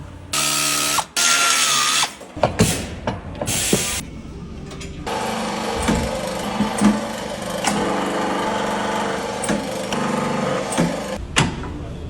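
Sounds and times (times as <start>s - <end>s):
steady tool noise: 5.1s - 11.2s.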